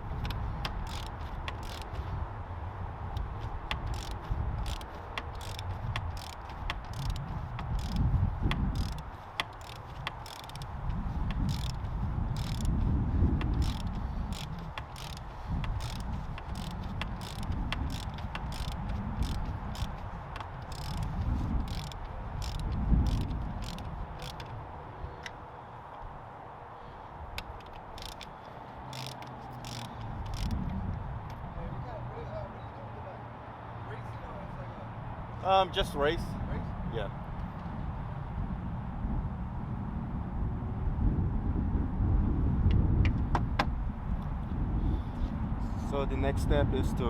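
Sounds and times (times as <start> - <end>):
ratchet wrench clicking: 0.0 - 2.1, 3.1 - 12.8, 13.4 - 24.6, 27.4 - 30.7
low rumbling handling noise: 0.0 - 25.4, 27.2 - 31.4.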